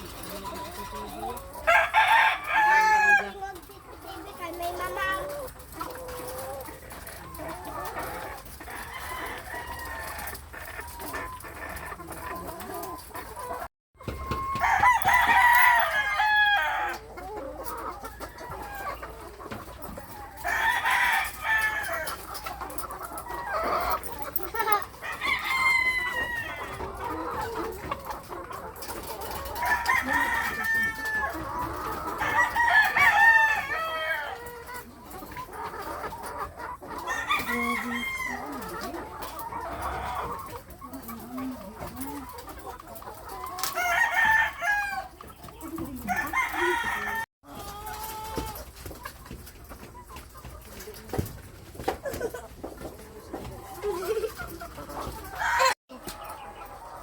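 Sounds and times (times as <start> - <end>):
chickens clucking: 0.0 - 57.0
rooster crowing: 1.7 - 3.2, 14.4 - 16.9, 25.1 - 26.6, 29.7 - 31.2.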